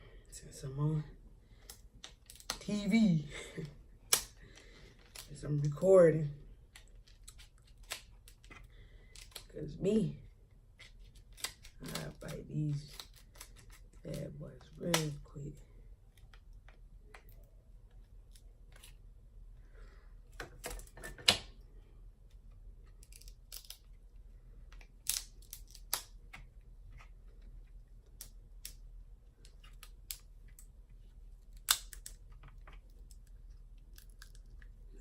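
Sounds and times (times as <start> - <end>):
scissors cracking crab shells: 1.6 - 2.7, 4.1 - 5.3, 6.7 - 9.5, 11.1 - 14.1, 23.0 - 23.8, 24.7 - 26.2, 31.5 - 32.2, 32.9 - 34.7.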